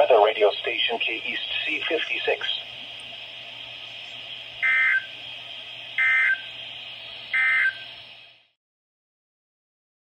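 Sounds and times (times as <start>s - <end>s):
digital data bursts: 0.0s - 2.8s, 3.8s - 5.2s, 5.9s - 6.6s, 7.3s - 7.9s
steady receiver hiss: 0.0s - 8.4s.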